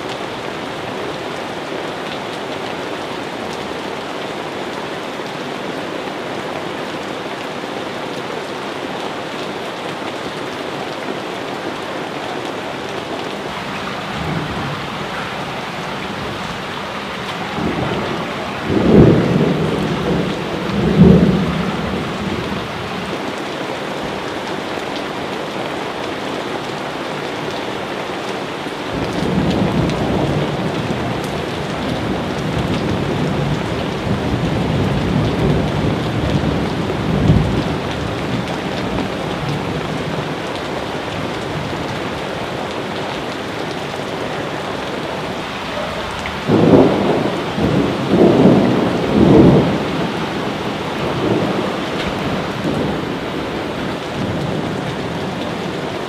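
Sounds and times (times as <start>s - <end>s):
heavy rain: 0.0s - 56.0s
thunder rumbling: 12.8s - 23.2s, 43.4s - 55.7s.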